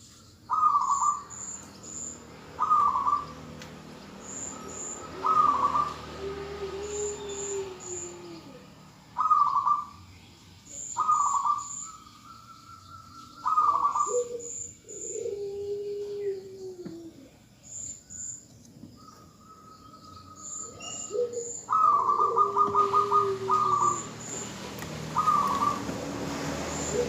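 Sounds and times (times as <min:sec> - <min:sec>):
doves cooing: 0:00.5 - 0:10.0, 0:13.4 - 0:17.5, 0:19.0 - 0:27.0.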